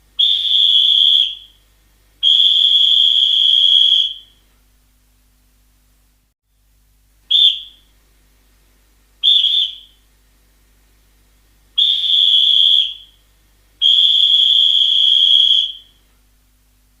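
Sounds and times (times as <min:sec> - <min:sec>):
referee's whistle blasts: 0:02.2 - 0:04.4, 0:07.3 - 0:07.8, 0:09.2 - 0:10.0, 0:11.8 - 0:13.2, 0:13.8 - 0:16.0.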